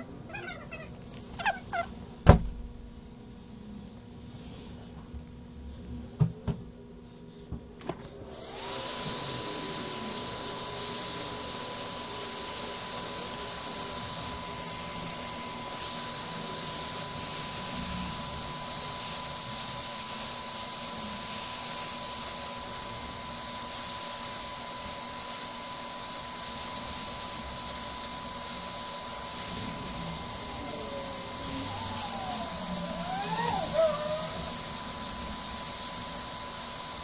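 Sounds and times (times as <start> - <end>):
hot air station blowing: 8.3 - 37.0.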